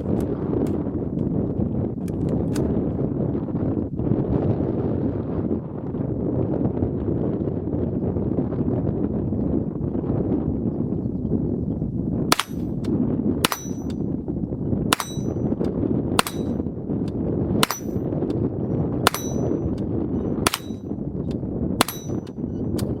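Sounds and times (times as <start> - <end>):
wind noise on microphone: 0.0 - 23.0
steel target ringing: 12.3 - 12.6, 13.5 - 14.0, 14.9 - 15.4, 16.2 - 16.6, 17.6 - 18.0, 19.1 - 19.7, 20.5 - 20.9, 21.8 - 22.4
rifle shots: 12.3 - 12.7, 13.4 - 13.9, 14.9 - 15.4, 16.2 - 16.6, 17.6 - 18.0, 19.1 - 19.6, 20.5 - 20.8, 21.8 - 22.3.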